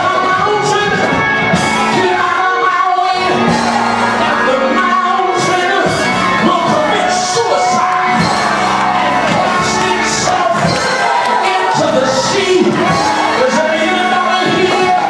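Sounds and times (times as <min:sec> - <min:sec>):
bass and keyboard notes: 0:00.0 - 0:15.0
church singing: 0:00.0 - 0:15.0
people shouting: 0:03.2 - 0:15.0.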